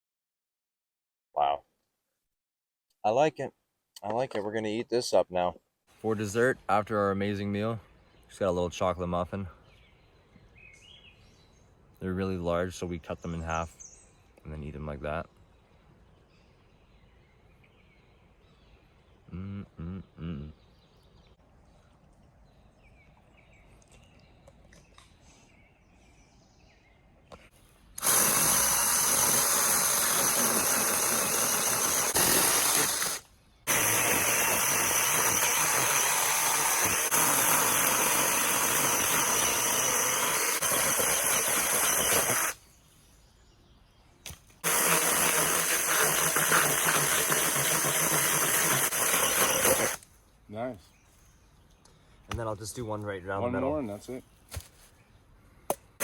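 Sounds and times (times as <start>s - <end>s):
cordless power tool whining: 28.0s - 42.6s, 44.6s - 50.0s.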